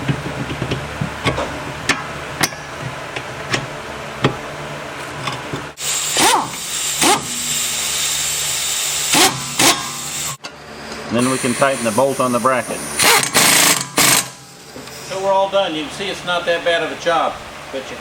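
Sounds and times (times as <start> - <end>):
steady hiss: 15.0 - 18.0
harsh scrapes: 16.2 - 18.0.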